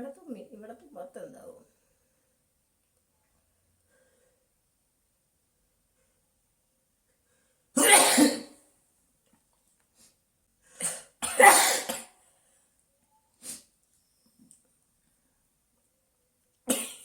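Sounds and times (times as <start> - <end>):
person sneezing: 7.8 - 8.5, 10.8 - 12.1.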